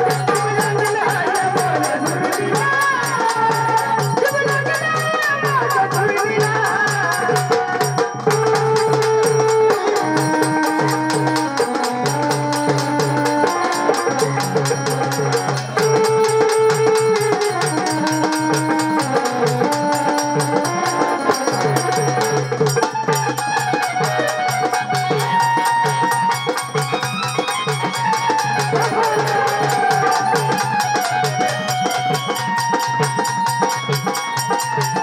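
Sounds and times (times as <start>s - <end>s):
fast percussion beat: 0.0s - 35.0s
melody of long held notes: 8.3s - 35.0s.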